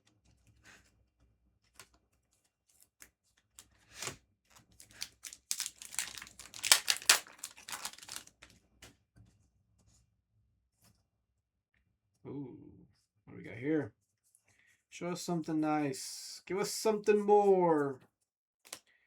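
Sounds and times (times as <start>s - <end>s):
wrapper tearing and crinkling: 3.9s - 8.5s.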